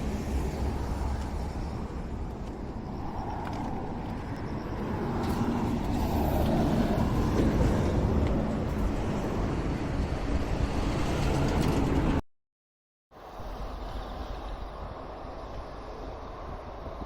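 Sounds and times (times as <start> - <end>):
train rumbling past: 0.0 - 12.2.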